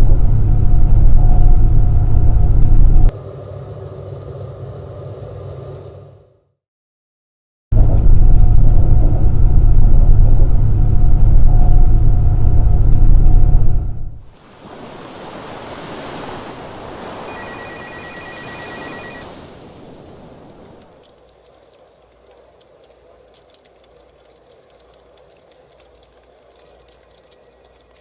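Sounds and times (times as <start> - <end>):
car engine rumbling: 0.0 - 3.9, 7.8 - 14.3.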